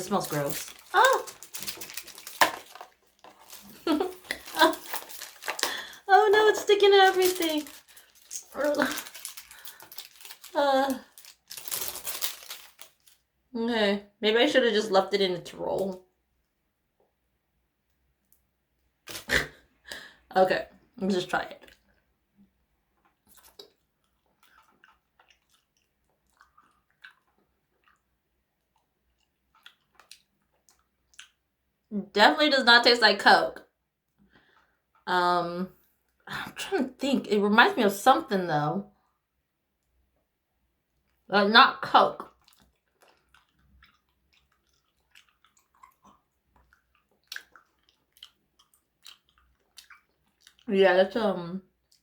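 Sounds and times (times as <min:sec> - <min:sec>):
person chewing sticky candy: 0:00.0 - 0:13.2, 0:21.6 - 0:31.7, 0:42.2 - 0:50.7, 0:51.7 - 0:52.0.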